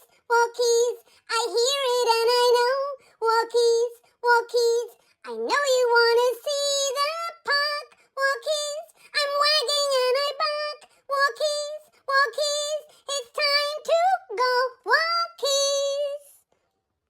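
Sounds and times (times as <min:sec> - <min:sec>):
high childlike voice singing: 0:00.0 - 0:16.4.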